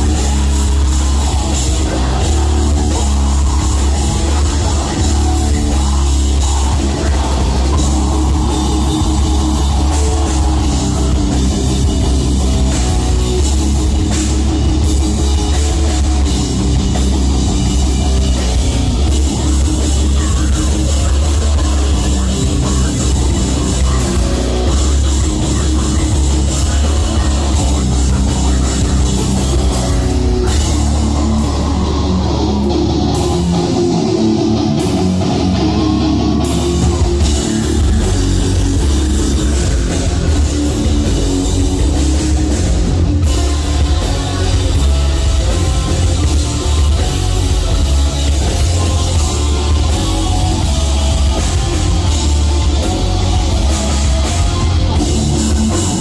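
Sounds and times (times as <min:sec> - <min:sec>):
drum kit: 0:00.0 - 0:56.0
heavy bass: 0:00.0 - 0:56.0
heavy metal band playing: 0:00.0 - 0:56.0.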